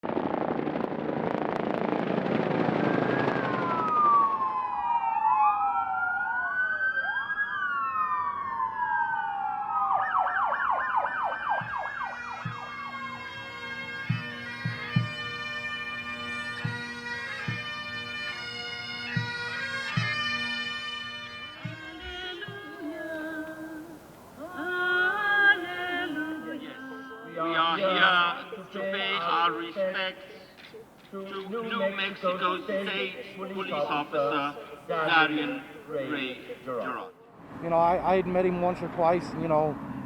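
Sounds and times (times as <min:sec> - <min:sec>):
police sirens wailing: 0:02.4 - 0:37.3
bagpipes playing a tune: 0:11.6 - 0:23.3, 0:24.0 - 0:37.0
passing vehicles: 0:23.2 - 0:40.0.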